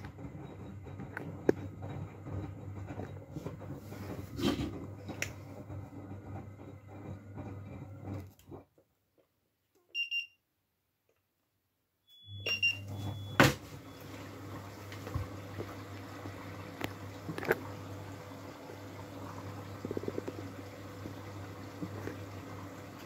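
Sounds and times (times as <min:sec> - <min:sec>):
washing machine humming: 0:00.0 - 0:08.7, 0:12.1 - 0:23.0
water sloshing in drum: 0:13.8 - 0:23.0.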